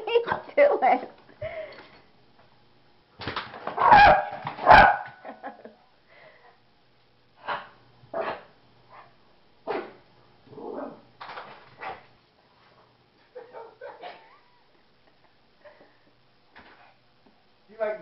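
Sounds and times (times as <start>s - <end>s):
dog barking: 3.8s - 5.2s, 13.4s - 14.3s.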